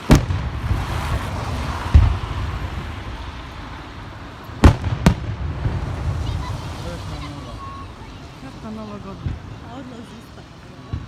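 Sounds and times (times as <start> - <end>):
fireworks bangs: 0.0 - 11.0
low rumble of distant fireworks: 0.0 - 11.0.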